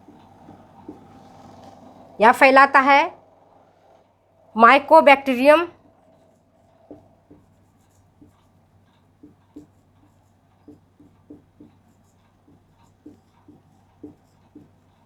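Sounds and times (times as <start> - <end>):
pen tapping and scratching: 0.0 - 2.1, 6.1 - 15.0.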